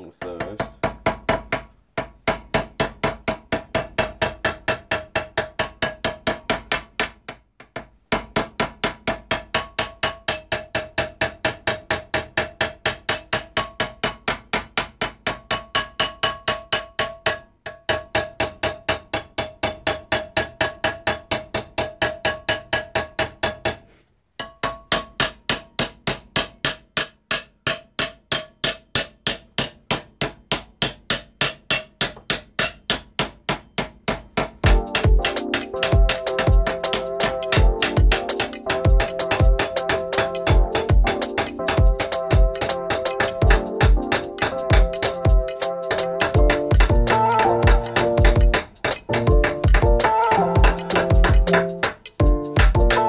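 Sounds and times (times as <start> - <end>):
hammer beating a steel plate: 0.2 - 23.8, 24.4 - 53.0.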